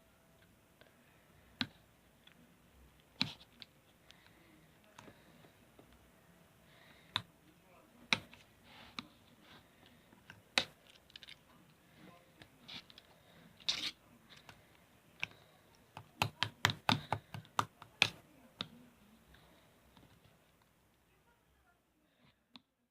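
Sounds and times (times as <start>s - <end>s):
sharp clicks and taps: 15.2s - 18.8s.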